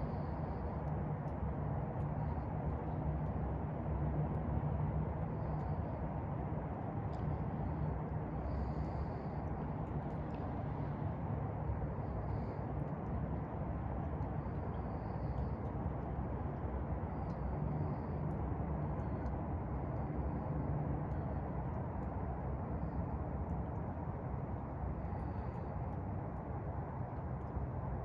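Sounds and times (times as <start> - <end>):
low outdoor ambience rumble: 0.0 - 28.0.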